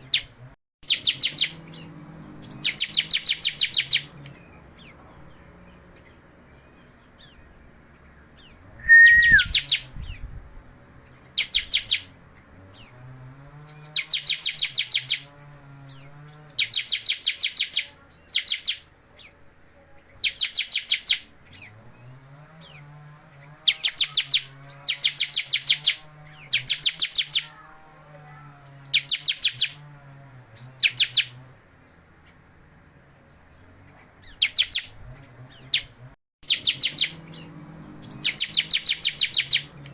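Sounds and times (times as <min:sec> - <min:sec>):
bird chirping rapidly: 0:00.0 - 0:13.0, 0:13.6 - 0:19.4, 0:20.2 - 0:27.6, 0:28.7 - 0:29.8, 0:30.6 - 0:39.9
bird whistled note slurring down: 0:08.8 - 0:09.6.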